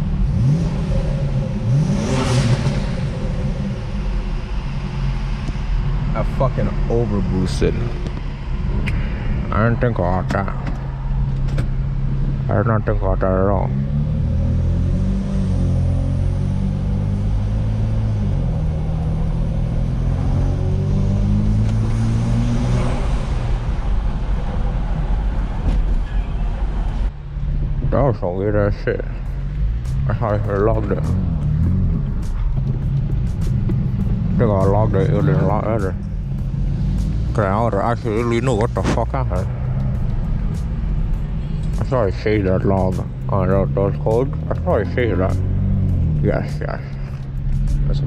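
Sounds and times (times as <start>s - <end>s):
car engine accelerating hard: 0.0s - 27.1s, 27.7s - 48.0s
man talking: 6.1s - 8.0s, 9.4s - 10.7s, 12.5s - 13.8s, 27.8s - 29.3s, 30.0s - 31.4s, 34.3s - 36.0s, 37.3s - 39.6s, 41.7s - 45.5s, 46.2s - 47.2s, 47.8s - 48.0s.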